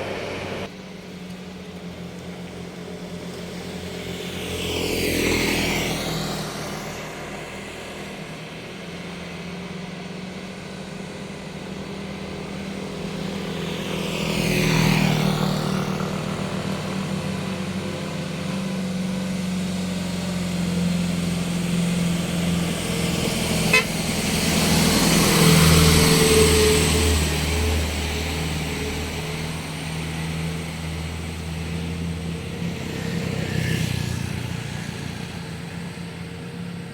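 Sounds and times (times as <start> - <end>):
low engine hum: 0.0 - 36.9
vehicles passing: 0.0 - 36.9.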